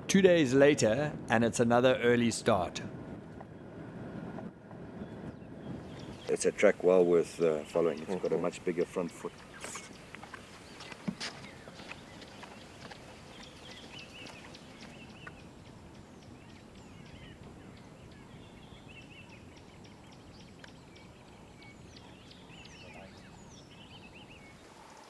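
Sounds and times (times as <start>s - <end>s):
birds chirping: 5.0s - 25.0s
steady background hiss: 5.8s - 25.0s.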